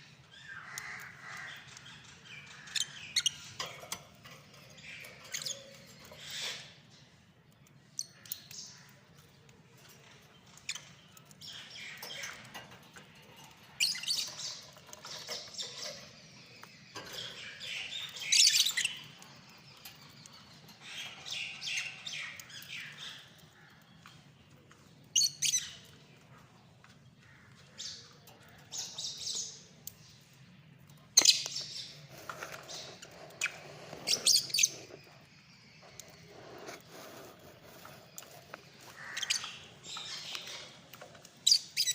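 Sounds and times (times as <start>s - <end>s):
lovebirds chirping and squawking: 0.0s - 41.9s.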